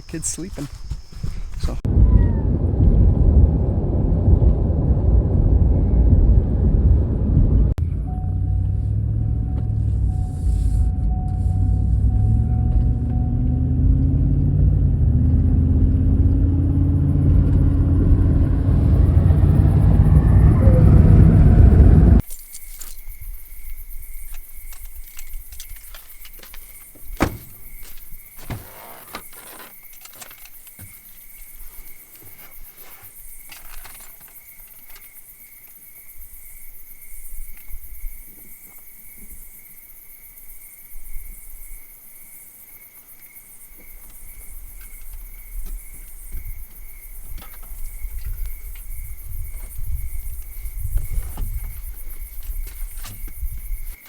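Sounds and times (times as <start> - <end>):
crickets chirring: 0.0 - 1.9, 7.9 - 54.0
handling clicks and knocks: 24.2 - 35.2, 43.8 - 54.0.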